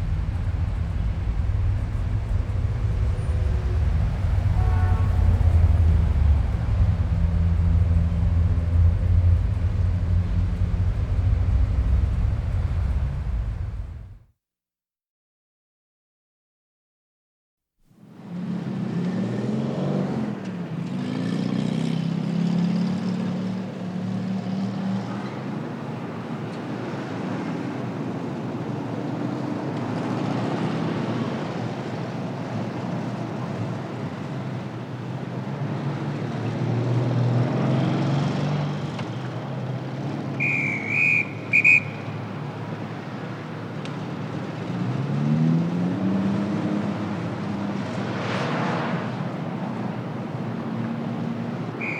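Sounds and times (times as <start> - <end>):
vehicle engine revving: 0.0 - 14.2.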